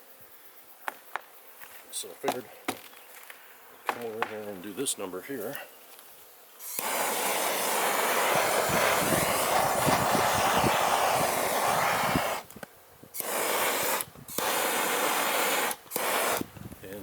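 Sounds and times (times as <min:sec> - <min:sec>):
gas torch hissing: 0:06.6 - 0:17.0.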